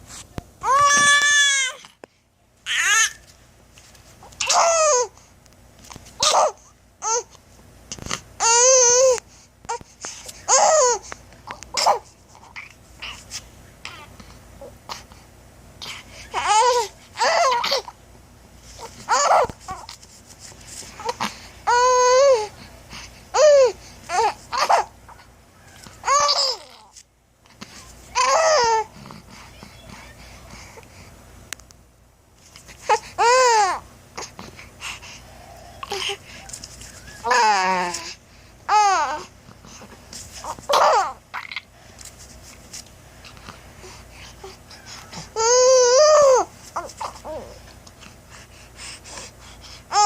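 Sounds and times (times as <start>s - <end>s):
baby squealing and babbling: 0.6s - 1.8s, 2.7s - 3.2s, 4.4s - 5.1s, 6.2s - 7.3s, 8.4s - 9.8s, 10.5s - 11.0s, 16.4s - 17.9s, 19.1s - 20.0s, 21.0s - 22.5s, 23.4s - 25.2s, 26.0s - 26.9s, 28.1s - 28.9s, 33.2s - 33.8s, 36.9s - 39.3s, 40.4s - 41.7s, 45.1s - 47.6s.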